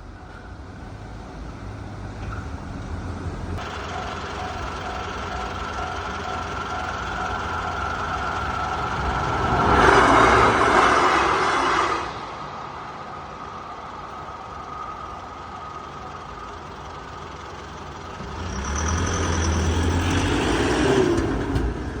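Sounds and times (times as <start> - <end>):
heavy vehicle driving past: 0.8 - 22.0
loud noise: 3.6 - 15.6.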